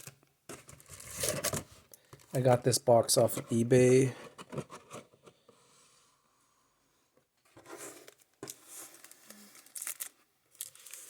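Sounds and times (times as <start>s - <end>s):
hands handling card packaging: 7.6s - 11.0s.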